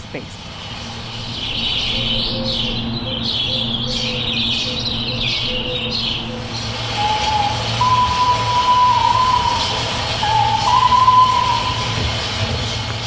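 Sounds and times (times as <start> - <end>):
low droning held tones: 0.4 - 13.0
small birds chirping: 0.4 - 13.0.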